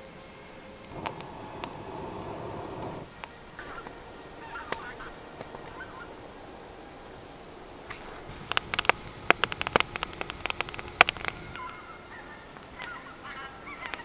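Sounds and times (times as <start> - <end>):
geese honking: 0.9 - 6.7.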